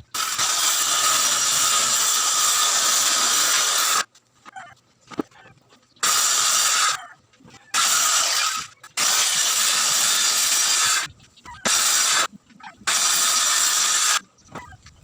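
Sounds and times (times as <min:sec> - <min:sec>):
power tool hissing on wood: 0:00.2 - 0:04.1, 0:06.0 - 0:07.0, 0:11.7 - 0:12.3, 0:12.9 - 0:14.2.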